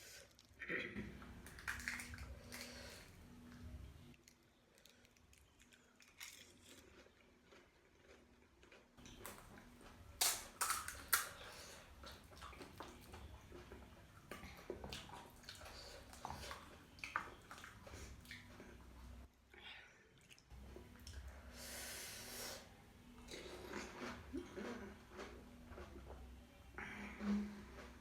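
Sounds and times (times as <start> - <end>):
crunching snack food: 4.1 - 9.5
chewing: 4.1 - 10.0, 12.0 - 18.9, 23.2 - 28.0.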